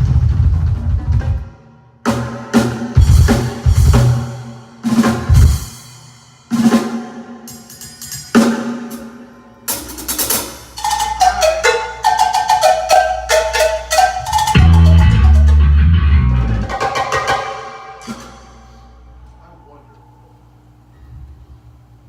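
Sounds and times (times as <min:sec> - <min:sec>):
drum hits: 0:02.1 - 0:09.1, 0:13.4 - 0:18.8
cymbal crash: 0:02.6 - 0:11.4, 0:14.4 - 0:19.2
bass drum thuds: 0:02.9 - 0:04.4, 0:05.2 - 0:05.7, 0:14.6 - 0:16.8.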